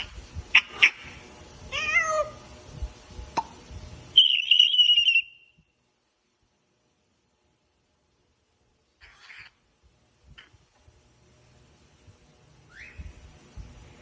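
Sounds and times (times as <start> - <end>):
parrot wavering call: 0.0 - 2.4, 4.2 - 5.6
parrot high wavering whistle: 4.2 - 5.6, 12.7 - 13.1.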